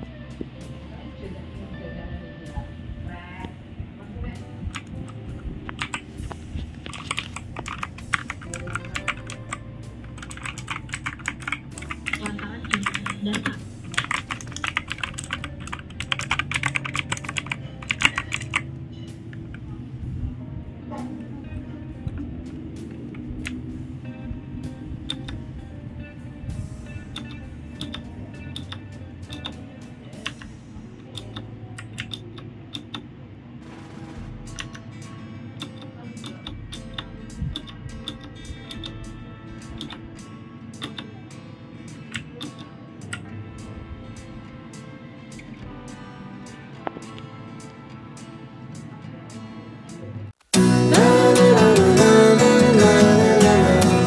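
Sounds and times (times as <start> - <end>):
mechanical keyboard typing: 4.7 - 18.6, 25.1 - 25.4, 27.1 - 29.6, 30.2 - 33.0, 34.6 - 34.8, 35.6 - 39.0, 39.8 - 40.0.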